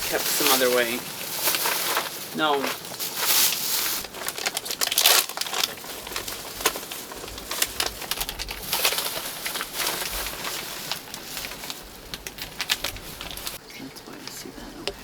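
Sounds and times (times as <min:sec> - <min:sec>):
crinkling and rustling: 0:00.0 - 0:13.6.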